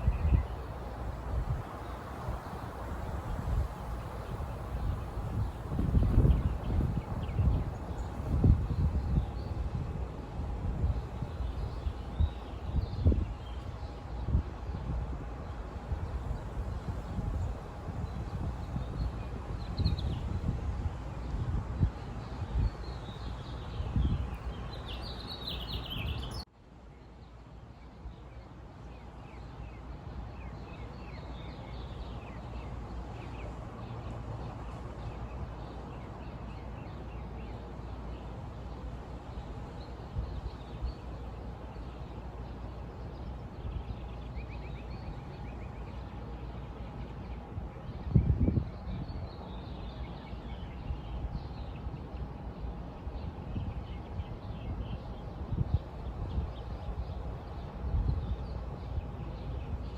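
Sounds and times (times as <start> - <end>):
birds chirping: 22.5 - 26.4.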